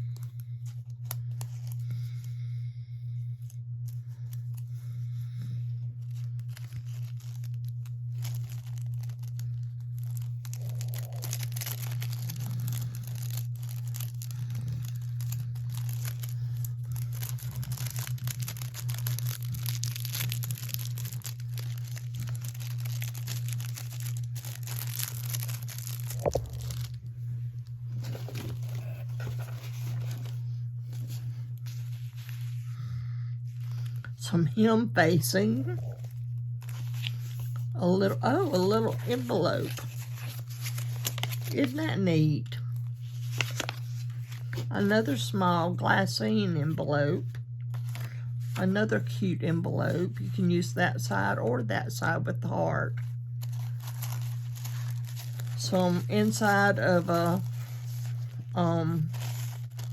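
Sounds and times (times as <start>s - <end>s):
steady low hum: 0.0s - 59.9s
paper and packaging rustling: 6.0s - 27.1s, 27.9s - 32.7s, 35.5s - 42.0s, 42.8s - 45.5s, 47.2s - 49.1s, 53.4s - 59.9s.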